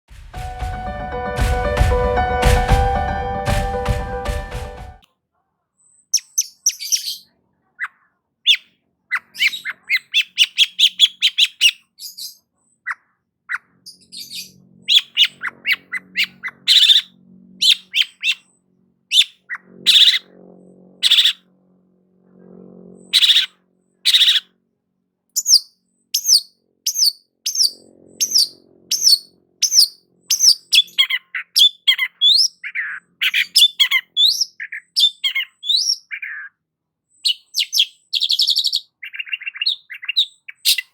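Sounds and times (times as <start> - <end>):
bird squawking calls: 7.8 - 13.6, 14.2 - 18.5, 19.1 - 20.3, 21.0 - 21.4, 23.1 - 23.5, 24.1 - 24.5, 25.4 - 36.5, 37.3 - 40.9
bird down-slurred whistles: 25.4 - 31.0.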